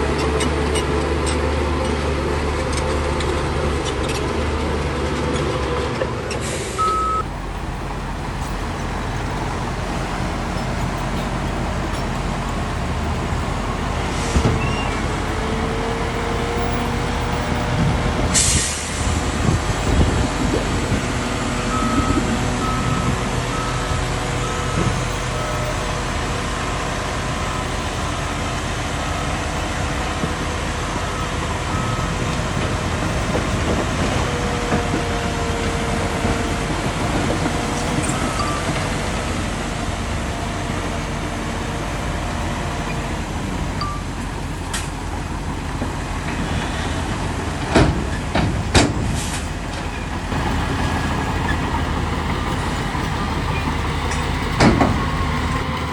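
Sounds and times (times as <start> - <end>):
heavy diesel machinery running: 0.0 - 55.9
reversing alarm beeping: 6.8 - 41.2, 43.8 - 44.2
loud metallic bangs: 46.3 - 55.9.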